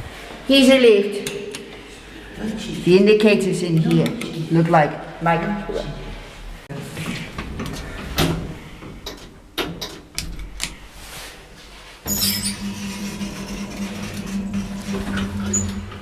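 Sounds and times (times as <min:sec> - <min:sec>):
lift motor hum: 0:12.0 - 0:16.0.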